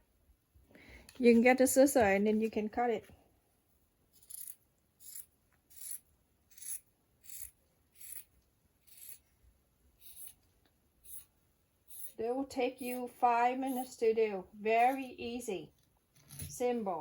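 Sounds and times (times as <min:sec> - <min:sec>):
scissors cutting fabric: 0:04.2 - 0:09.3, 0:10.0 - 0:10.4, 0:11.9 - 0:12.2, 0:12.8 - 0:14.0.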